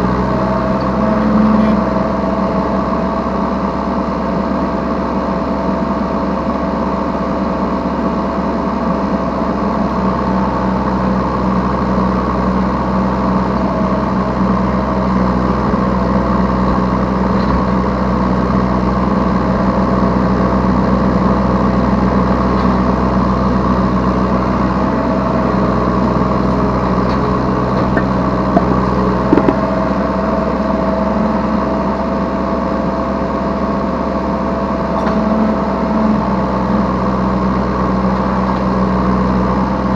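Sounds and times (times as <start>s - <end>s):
excavator diesel engine running: 0.0s - 39.9s
short knocks: 27.7s - 29.6s.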